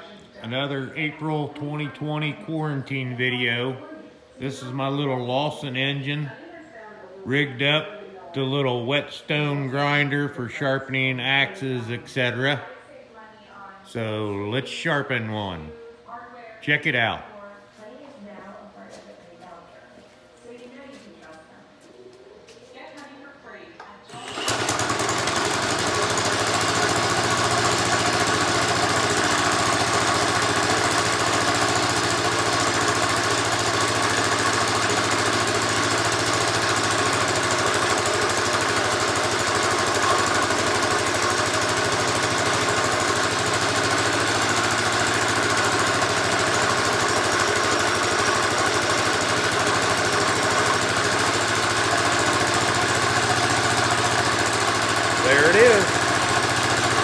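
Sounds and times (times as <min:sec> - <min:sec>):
small engine running: 0:24.1 - 0:57.0
whetstone grinder: 0:24.1 - 0:57.0.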